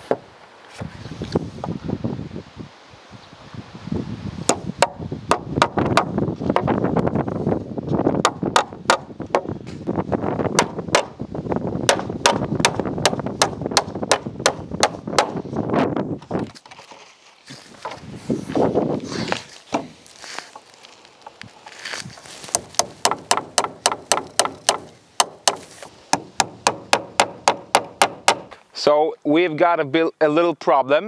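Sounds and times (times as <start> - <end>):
hammer driving nails into wood: 4.5 - 6.1, 8.3 - 9.5, 10.6 - 11.2, 11.9 - 15.4, 22.5 - 28.6.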